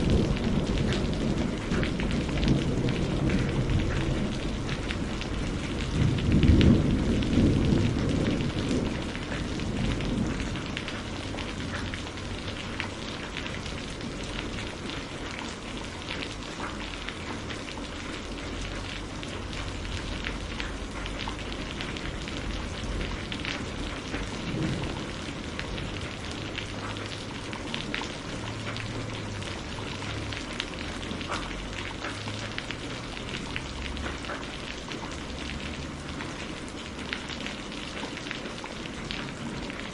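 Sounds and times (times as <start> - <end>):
thunder rolling: 0.0 - 14.9, 19.4 - 30.4
heavy rain falling: 0.0 - 39.9.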